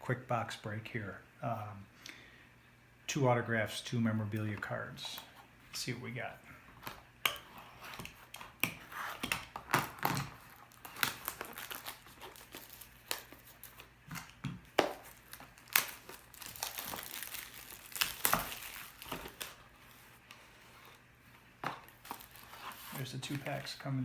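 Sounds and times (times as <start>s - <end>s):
plastic shrink wrap crinkling: 7.9s - 21.0s, 21.7s - 24.0s.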